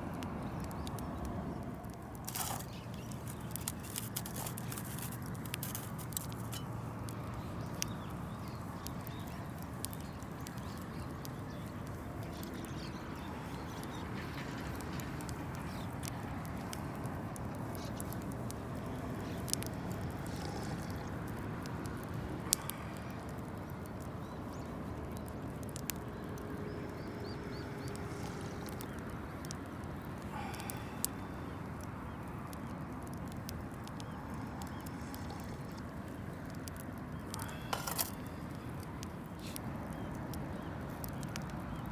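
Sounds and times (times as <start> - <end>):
campfire rumble: 0.0 - 41.9
fire crackles and pops: 0.0 - 41.9.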